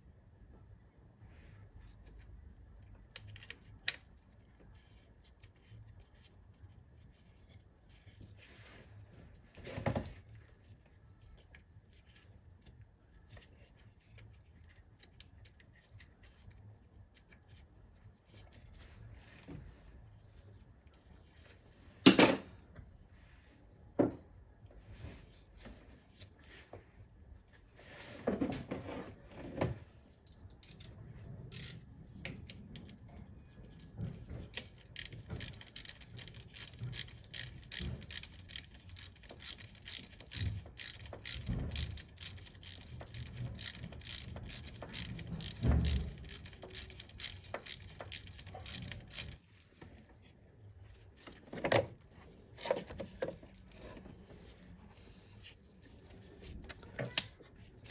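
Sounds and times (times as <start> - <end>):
rapid clicking and rattling: 34.2 - 49.4.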